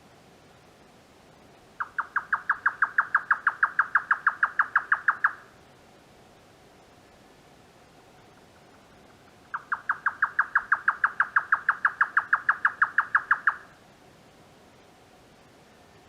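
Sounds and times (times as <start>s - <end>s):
nightjar rapid song: 1.8s - 5.4s, 9.6s - 13.7s.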